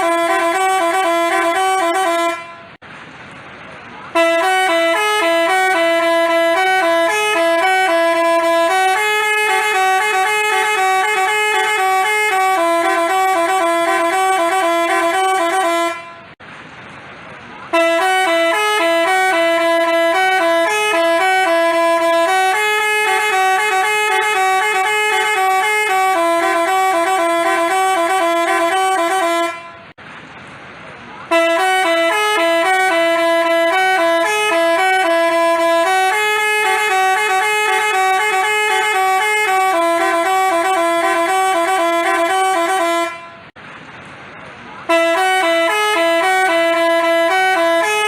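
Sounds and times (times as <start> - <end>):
bus horn playing a melody: 0.0 - 2.8, 4.1 - 16.4, 17.7 - 30.0, 31.2 - 43.6, 44.8 - 48.0.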